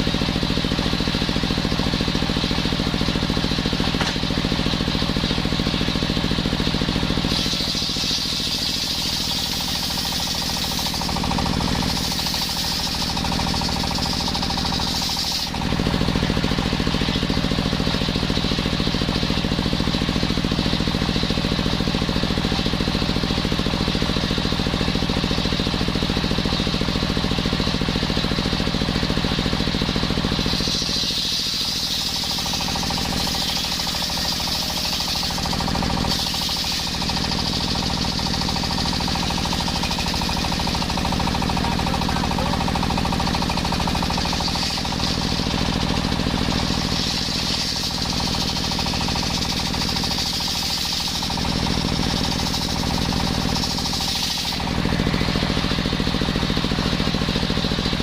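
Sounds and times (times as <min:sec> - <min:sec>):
sawmill machine drone: 0:00.0 - 0:58.0
saw hiss: 0:07.1 - 0:17.2, 0:30.2 - 0:37.7, 0:53.4 - 0:55.8.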